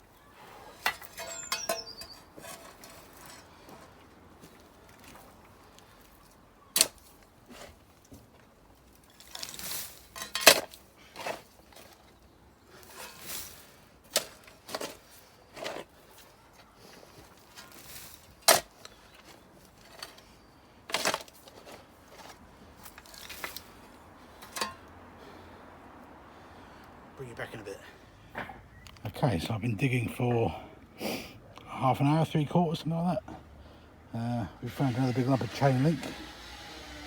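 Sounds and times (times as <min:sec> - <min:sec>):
earth scraping: 0:00.0 - 0:25.4, 0:34.6 - 0:36.6
spade striking soil: 0:00.7 - 0:03.9, 0:06.7 - 0:07.8, 0:09.2 - 0:12.0, 0:17.6 - 0:19.0, 0:20.9 - 0:23.8, 0:24.4 - 0:24.8.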